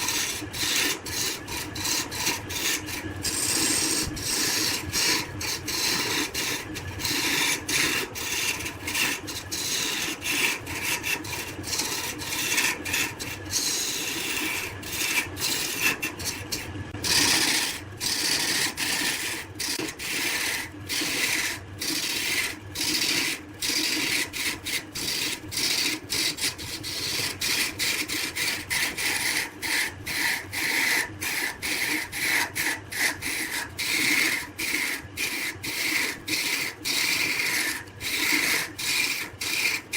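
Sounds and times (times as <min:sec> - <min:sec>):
lathe humming: 0:00.0 - 0:24.1
turning tool cutting wood: 0:00.0 - 0:39.9.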